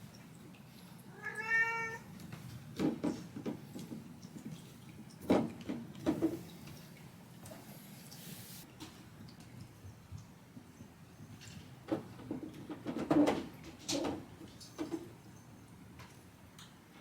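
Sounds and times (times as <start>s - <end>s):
cat meowing: 1.1s - 2.1s.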